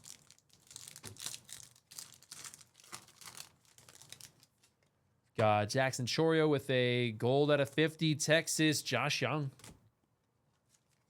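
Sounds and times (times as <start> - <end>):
trading cards rustling: 0.0 - 4.8.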